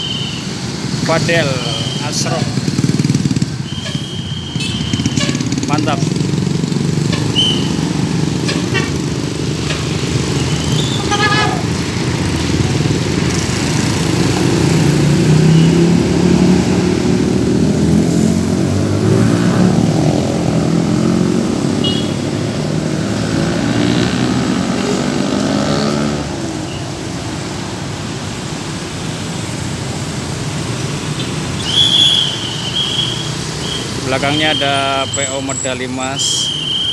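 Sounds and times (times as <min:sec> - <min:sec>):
bus engine pulling away: 0:00.0 - 0:28.8
road traffic passing: 0:00.0 - 0:36.9.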